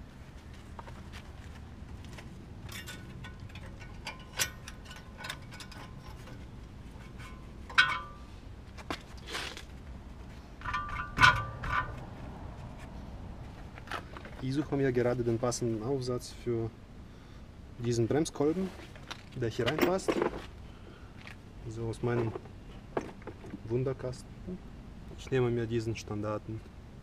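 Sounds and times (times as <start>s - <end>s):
metal tool adapters clinking: 2.6s - 8.2s, 10.6s - 12.0s, 19.0s - 20.4s.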